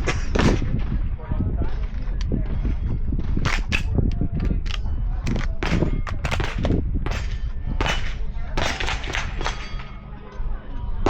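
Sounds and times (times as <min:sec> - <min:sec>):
steady low rumble: 0:00.0 - 0:11.0
pistol shots: 0:03.4 - 0:04.0, 0:04.6 - 0:09.9
steel plates ringing: 0:08.6 - 0:10.2.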